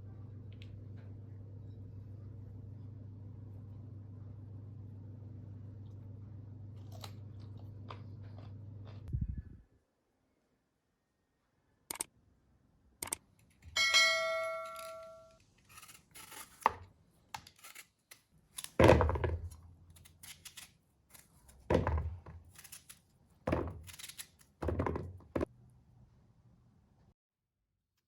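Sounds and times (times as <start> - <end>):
short ringing clink: 13.8 - 15.4.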